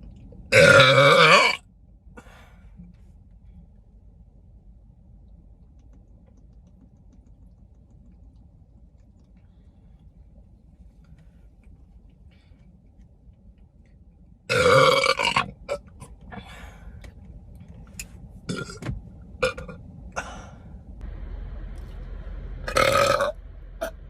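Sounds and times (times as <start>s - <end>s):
girl burping loudly: 0.5s - 1.6s.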